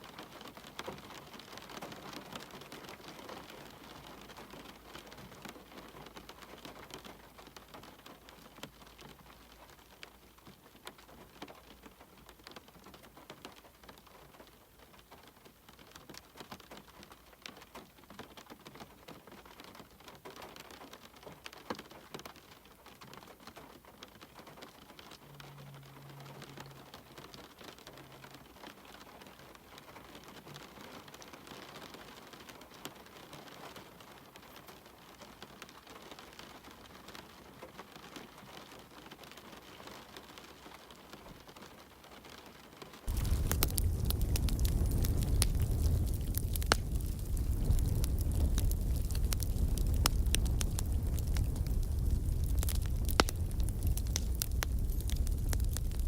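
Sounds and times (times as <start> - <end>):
faint steady rain: 0.0 - 56.0
raindrops ticking: 43.1 - 56.0.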